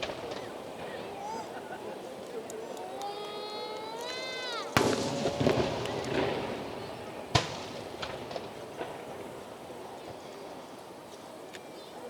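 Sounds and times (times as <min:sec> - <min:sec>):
firework bursts: 0:00.0 - 0:01.7, 0:04.0 - 0:10.5
firework crackling: 0:00.0 - 0:02.0, 0:03.2 - 0:10.7
firework whistle: 0:04.8 - 0:07.8.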